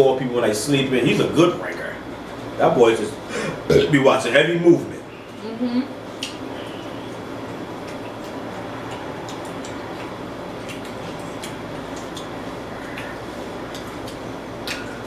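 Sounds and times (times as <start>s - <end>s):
room noise hiss: 0.0s - 15.0s
people chewing food: 6.2s - 15.0s.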